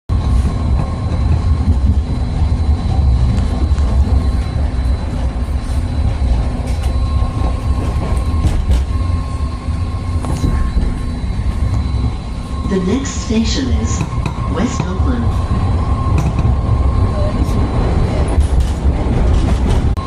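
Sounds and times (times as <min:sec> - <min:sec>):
steady high whine: 0:00.1 - 0:20.0
train car rumbling: 0:00.1 - 0:20.0.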